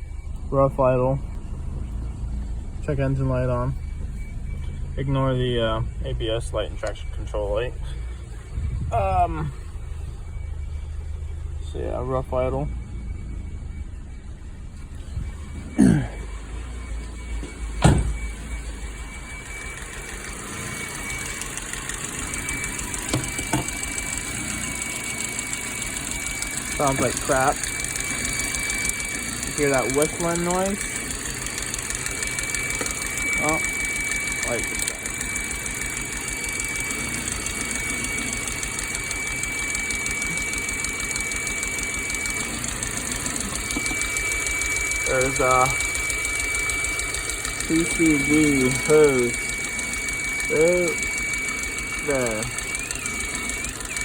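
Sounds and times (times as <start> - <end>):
car engine idling rough: 0.0 - 54.0
high whistling of vacuum leak: 19.4 - 54.0.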